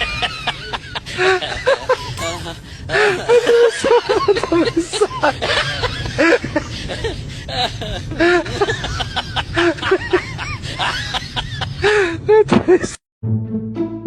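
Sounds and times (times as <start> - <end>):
people laughing and talking: 0.4 - 6.5.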